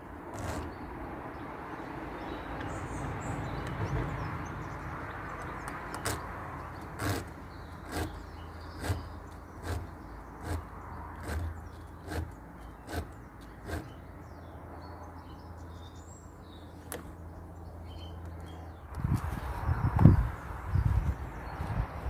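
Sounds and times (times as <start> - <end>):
chainsaw cutting log: 0.3 - 0.8, 5.9 - 14.0.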